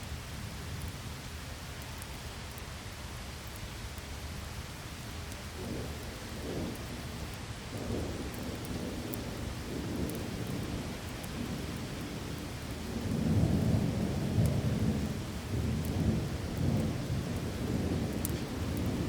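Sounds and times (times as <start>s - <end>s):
heavy rain: 0.0s - 19.0s
rumble of thunder: 5.6s - 19.0s.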